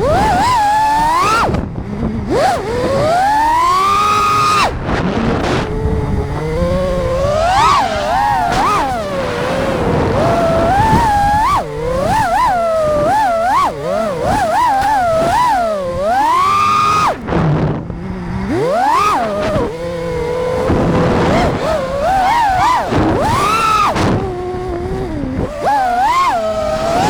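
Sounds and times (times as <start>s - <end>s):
quadcopter motors whining: 0.0s - 27.0s.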